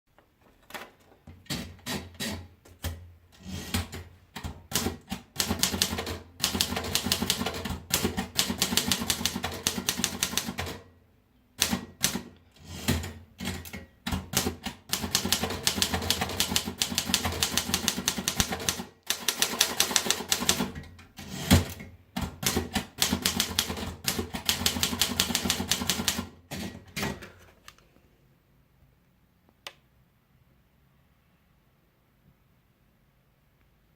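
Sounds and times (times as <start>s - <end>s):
manual typewriter typing: 3.4s - 10.9s, 11.6s - 27.2s.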